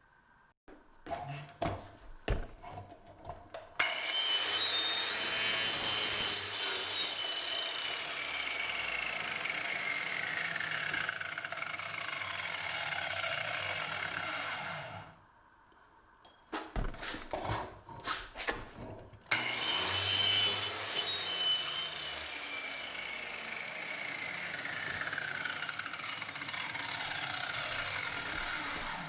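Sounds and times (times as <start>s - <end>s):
saw grinding into metal: 3.8s - 11.5s, 19.3s - 29.0s.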